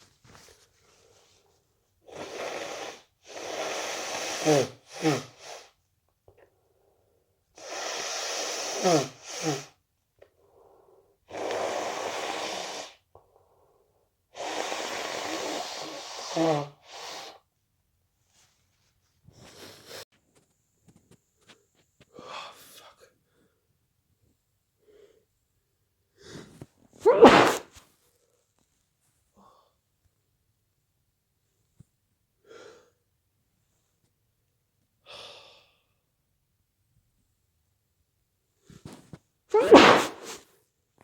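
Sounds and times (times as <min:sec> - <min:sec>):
person blowing nose: 0:02.0 - 0:05.8, 0:07.6 - 0:09.8, 0:11.3 - 0:13.0, 0:14.3 - 0:17.5, 0:26.2 - 0:27.8, 0:39.5 - 0:40.5.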